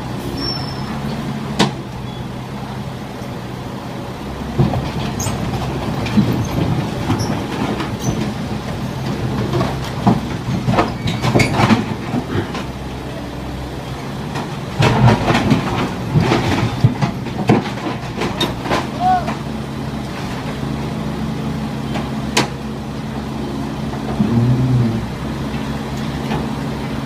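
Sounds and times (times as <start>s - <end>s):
diesel engine under load: 0.0s - 27.0s
steel tracks clanking and squealing: 0.1s - 2.5s, 4.7s - 19.5s.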